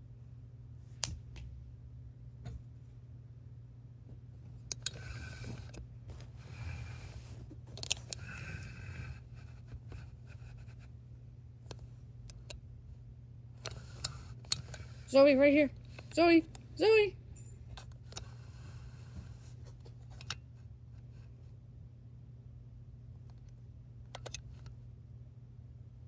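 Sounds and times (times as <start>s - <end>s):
steady low hum: 0.0s - 26.0s
phone handling clicks: 20.1s - 20.5s, 23.2s - 24.8s.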